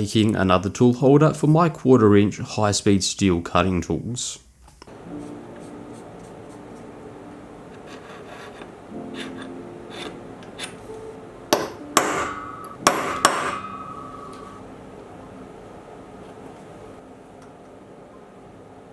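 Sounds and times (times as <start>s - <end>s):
sharp metal clanks ringing: 11.6s - 14.6s.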